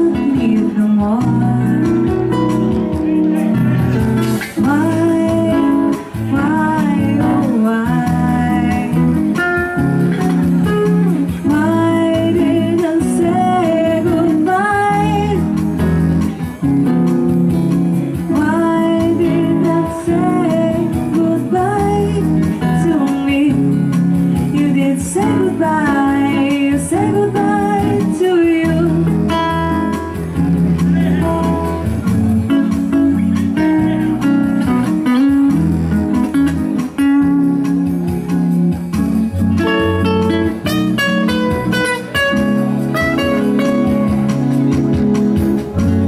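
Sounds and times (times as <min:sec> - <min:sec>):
person singing: 0:00.0 - 0:02.9, 0:04.3 - 0:15.9, 0:18.1 - 0:30.2
guitar: 0:00.0 - 0:46.0
steady bass line: 0:00.0 - 0:46.0.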